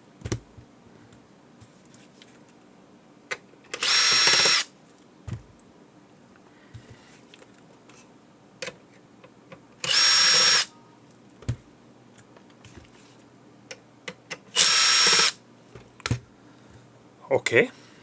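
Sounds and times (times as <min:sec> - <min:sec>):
electric screwdriver running: 0:03.8 - 0:04.7, 0:09.8 - 0:10.7, 0:14.6 - 0:15.4.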